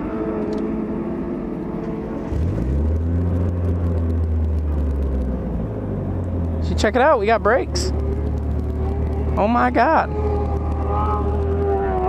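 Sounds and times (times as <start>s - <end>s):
car engines droning: 0.0s - 12.0s
nearby engine revving: 1.9s - 5.6s, 6.2s - 12.0s.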